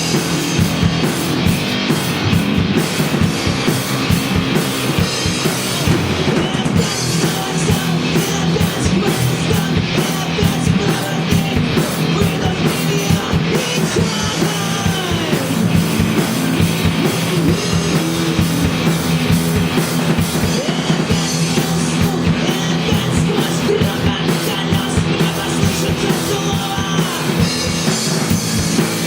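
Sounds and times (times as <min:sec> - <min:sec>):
live rock band playing: 0:00.0 - 0:29.0
steady drum beat: 0:00.0 - 0:29.0.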